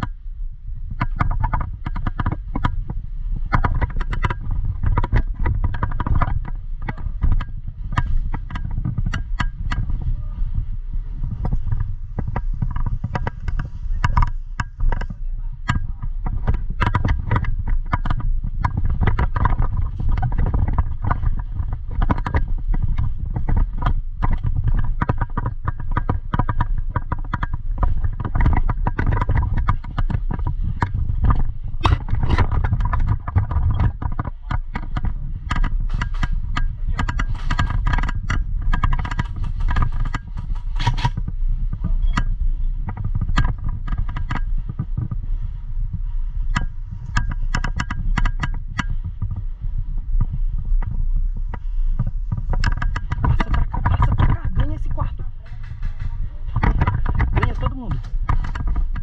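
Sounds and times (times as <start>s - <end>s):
low rumble: 0.0s - 59.0s
handling clicks and scrapes: 0.8s - 59.0s.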